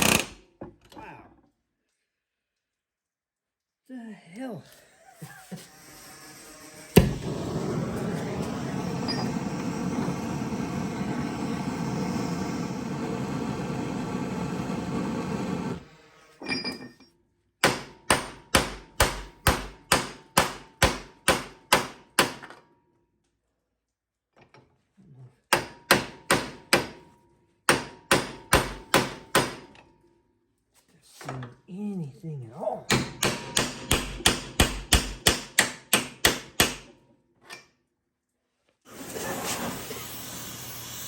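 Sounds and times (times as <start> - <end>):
machine drone: 5.6 - 16.2.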